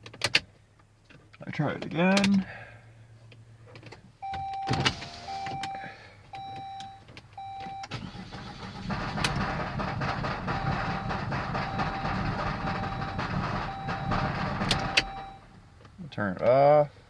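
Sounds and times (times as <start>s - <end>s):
car engine cranking and running rough: 7.9s - 15.9s
dashboard chime beeps: 10.7s - 15.4s.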